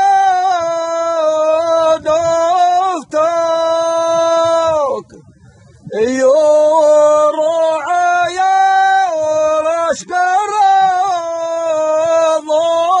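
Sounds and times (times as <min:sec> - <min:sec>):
solo voice singing: 0:05.9 - 0:13.0.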